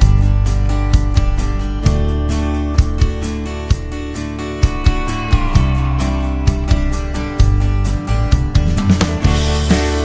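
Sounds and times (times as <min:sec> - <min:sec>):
guitar over drum beat: 0:00.0 - 0:10.0
note sliding down in pitch: 0:04.5 - 0:08.2.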